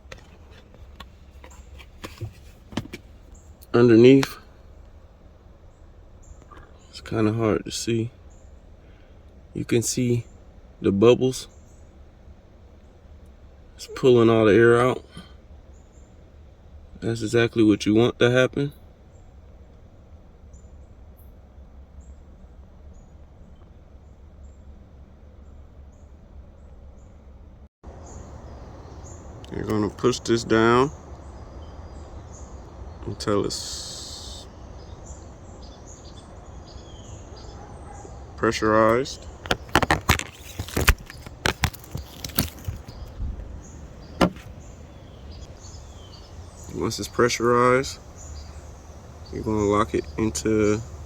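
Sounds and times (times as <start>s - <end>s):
low outdoor rumble: 0.0s - 51.0s
plastic clicks and knocks: 39.4s - 43.0s, 44.1s - 44.6s.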